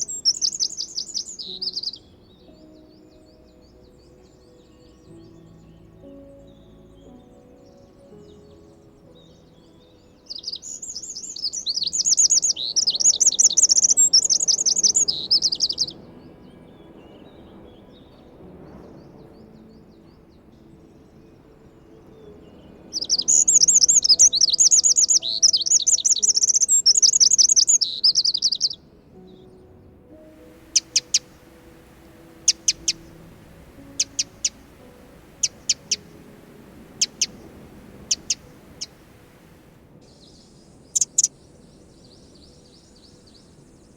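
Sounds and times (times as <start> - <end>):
wren trilling song: 0.0 - 43.9
short sharp bird calls: 30.6 - 39.5.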